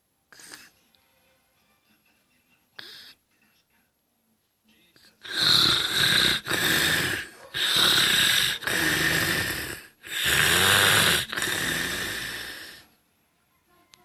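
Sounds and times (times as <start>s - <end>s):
exaggerated rasping snoring: 5.2s - 12.9s.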